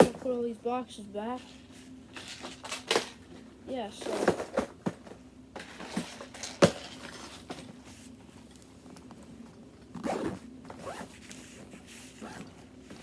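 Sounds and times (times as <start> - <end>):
plastic boxes knocking and rustling: 4.0 - 7.8.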